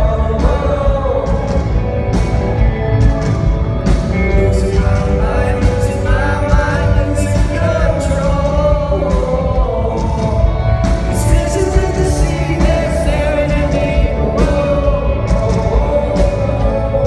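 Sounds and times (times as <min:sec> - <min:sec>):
man singing: 0:00.0 - 0:03.0, 0:03.8 - 0:17.0
drums and cymbal hits: 0:00.0 - 0:17.0
live rock band playing: 0:00.0 - 0:17.0.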